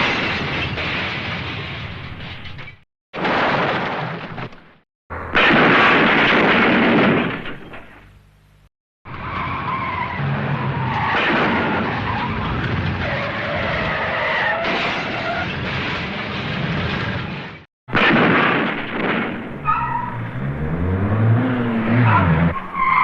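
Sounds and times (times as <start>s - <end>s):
car engine and road noise: 8.1s - 17.6s, 19.5s - 23.0s
tyres squealing and skidding: 9.1s - 17.2s, 19.6s - 23.0s
loud blast: 17.9s - 19.6s.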